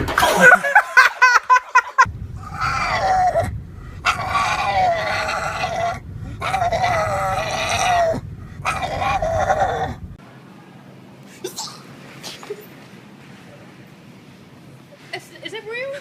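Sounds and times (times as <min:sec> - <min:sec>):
animal calling in drawn-out cries: 0:02.4 - 0:10.0.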